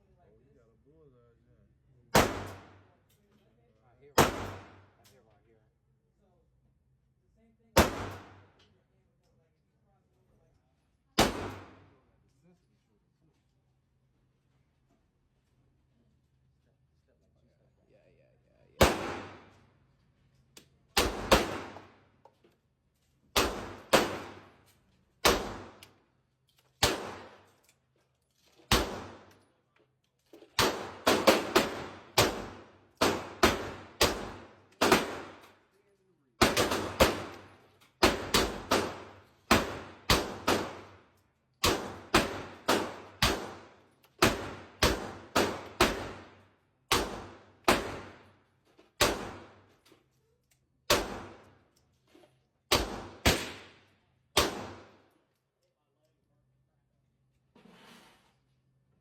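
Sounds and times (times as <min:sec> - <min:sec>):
gunshots: 0:02.1 - 0:02.9, 0:04.2 - 0:05.0, 0:07.8 - 0:08.6, 0:11.2 - 0:11.9, 0:18.8 - 0:19.6, 0:20.9 - 0:22.0, 0:23.3 - 0:24.6, 0:25.2 - 0:25.8, 0:26.8 - 0:27.5, 0:28.7 - 0:29.4, 0:30.6 - 0:35.6, 0:36.4 - 0:48.3, 0:49.0 - 0:49.7, 0:50.9 - 0:51.6, 0:52.7 - 0:55.0.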